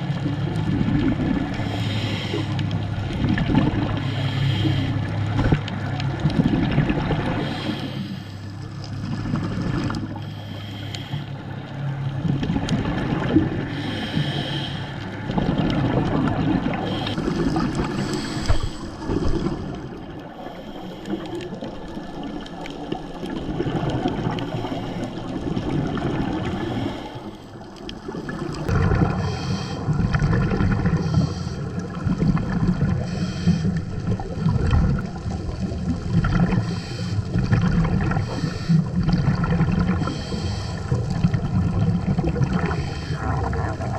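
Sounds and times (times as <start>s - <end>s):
exhaust bubbling underwater: 0.0s - 43.9s
low underwater rumble: 0.0s - 43.9s
regulator hissing inhalations: 4.0s - 5.0s, 10.2s - 11.3s.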